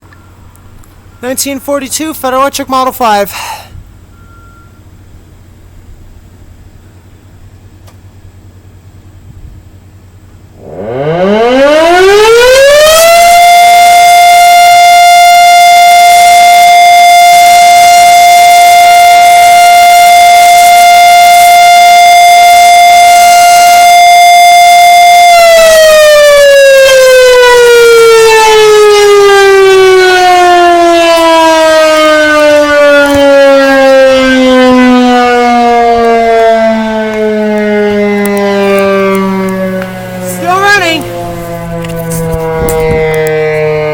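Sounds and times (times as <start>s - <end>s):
rotor siren wailing: 10.5s - 43.9s.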